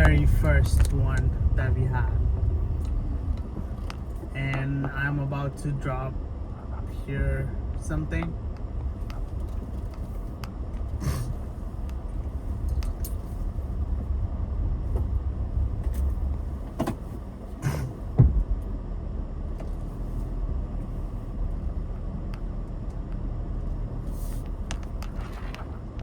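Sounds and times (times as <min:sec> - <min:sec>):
car engine and road rumble: 0:00.0 - 0:26.0
loud thump: 0:17.7 - 0:18.5.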